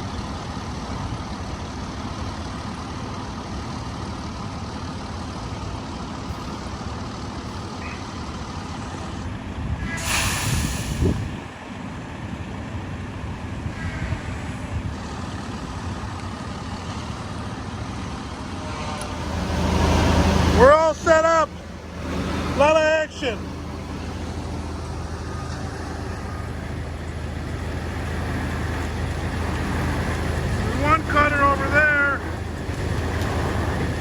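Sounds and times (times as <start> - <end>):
truck diesel engine running: 0.0 - 34.0
burst of hissing air: 9.8 - 11.4.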